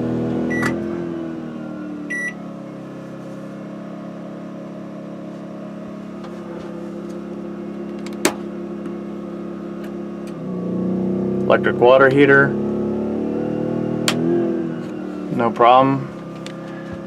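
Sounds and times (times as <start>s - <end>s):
generator running: 0.0s - 10.7s, 14.0s - 17.0s
short electronic beep: 0.5s - 0.8s, 2.1s - 2.4s.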